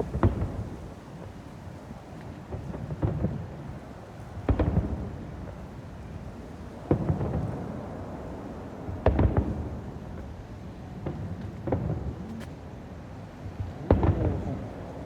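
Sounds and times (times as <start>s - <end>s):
fireworks shells booming: 0.0s - 1.0s
small fireworks pops: 0.0s - 8.2s, 8.9s - 15.0s.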